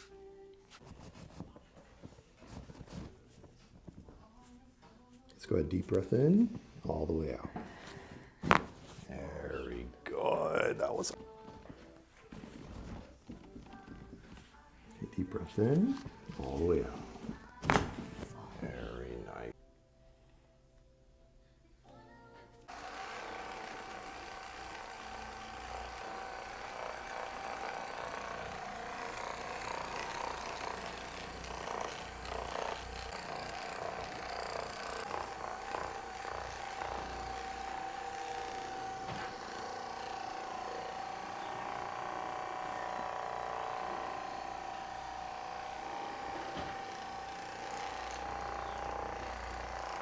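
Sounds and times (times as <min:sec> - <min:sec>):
small electric motor whining: 0:22.7 - 0:50.0.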